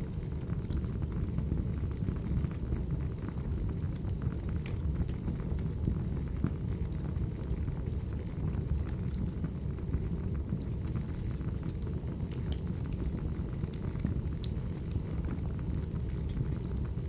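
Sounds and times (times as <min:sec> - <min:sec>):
logs crackling and popping: 0:04.0 - 0:17.0.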